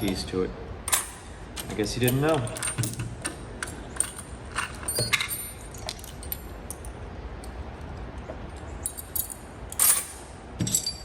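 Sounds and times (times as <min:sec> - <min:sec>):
metal keys clinking: 0:00.9 - 0:06.9, 0:08.6 - 0:11.0.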